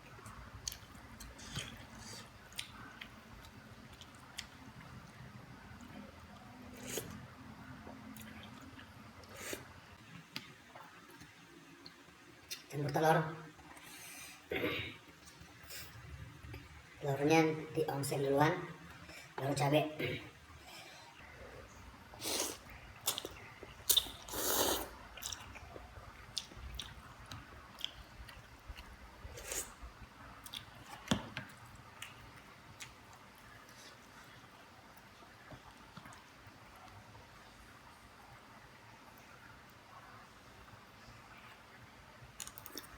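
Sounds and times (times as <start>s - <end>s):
wet chewing of noodles: 0.6s - 5.2s, 22.1s - 29.8s.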